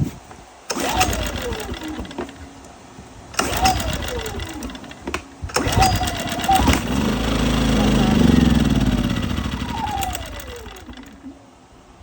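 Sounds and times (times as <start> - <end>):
engine spinning up and winding down: 0.7 - 2.3, 3.4 - 11.3
recoil starter pulls: 0.7 - 11.4.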